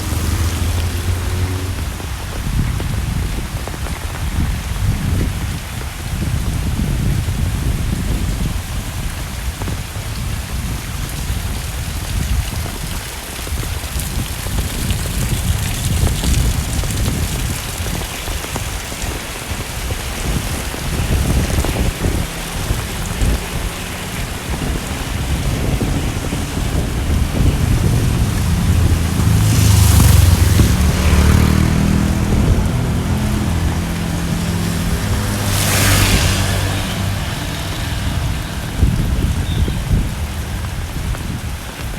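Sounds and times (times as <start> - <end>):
heavy rain falling: 0.0 - 41.9
motor engine hum: 19.6 - 41.7
low rumble: 21.2 - 41.4.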